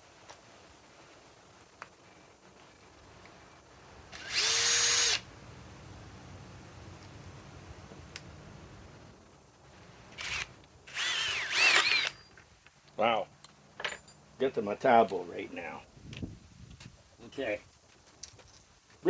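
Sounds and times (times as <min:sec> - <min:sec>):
impact driver motor whine: 0:10.2 - 0:12.3.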